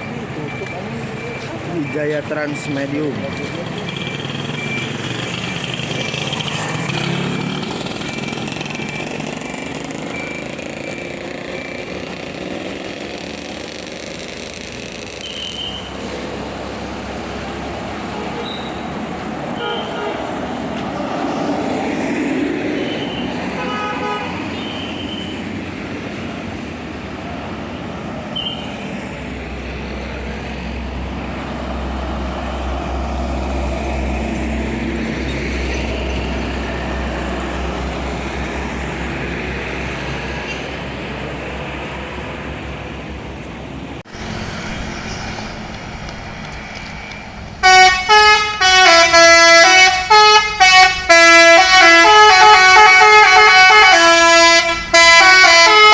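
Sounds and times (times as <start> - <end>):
buses driving past: 0.0 - 55.9
traffic noise: 0.0 - 55.9
low engine rumble: 42.3 - 49.2
short horn toots: 47.6 - 55.9.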